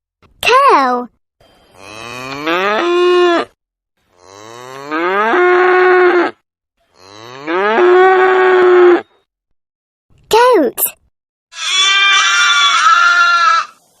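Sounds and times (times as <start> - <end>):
cow mooing: 1.8 - 9.1, 11.5 - 13.8.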